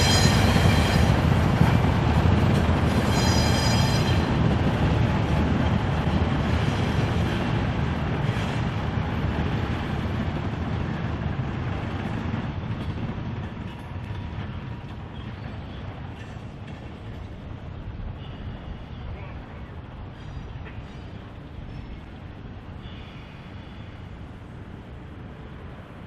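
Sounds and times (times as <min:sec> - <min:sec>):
train cars rumbling along track: 0:00.0 - 0:26.0
high squeal: 0:03.1 - 0:04.1.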